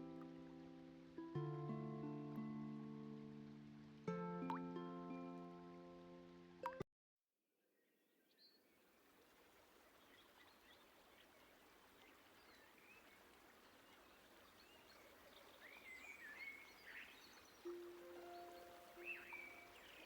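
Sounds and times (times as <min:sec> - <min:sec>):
faint outdoor ambience: 0:00.0 - 0:06.8, 0:08.4 - 0:20.0
birds chirping: 0:10.0 - 0:20.0.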